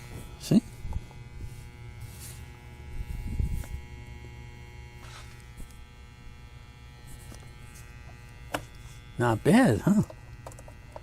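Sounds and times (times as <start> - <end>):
electrical buzz with mains hum: 0.0 - 11.0.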